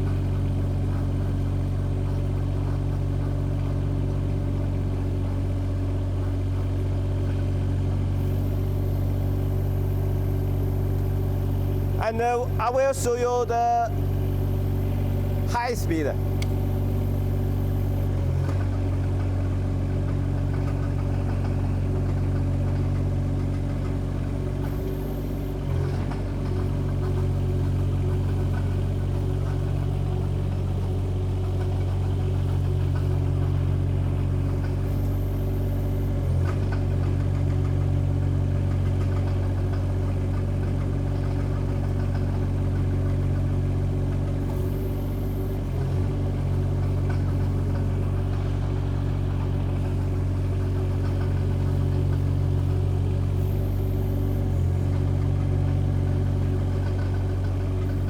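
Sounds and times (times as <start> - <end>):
excavator engine running: 0.0 - 58.0
machine tracks travelling: 8.3 - 19.0.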